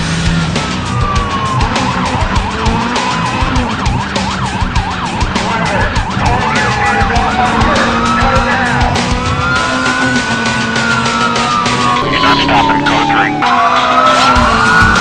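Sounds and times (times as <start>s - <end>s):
police siren wailing and yelping: 0.5s - 15.0s.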